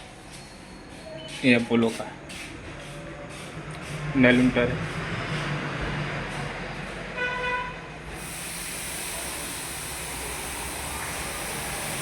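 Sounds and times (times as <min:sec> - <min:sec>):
compressed air hissing: 0:08.1 - 0:12.0.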